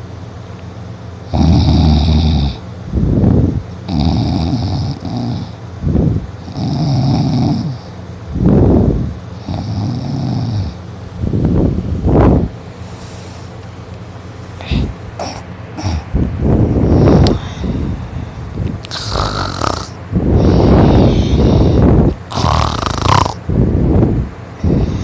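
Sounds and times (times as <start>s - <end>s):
person snoring loudly: 1.3s - 2.6s, 3.9s - 5.6s, 6.4s - 7.9s, 9.4s - 10.8s, 14.6s - 16.1s, 18.8s - 23.4s.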